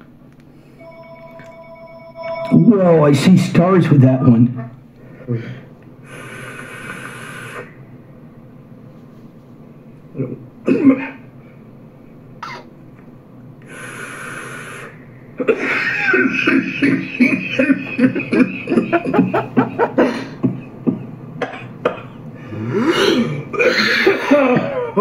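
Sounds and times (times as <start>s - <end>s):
breathy hiss of vapour: 5.0s - 7.8s, 13.6s - 15.2s
man coughing: 10.2s - 11.3s, 15.4s - 25.0s.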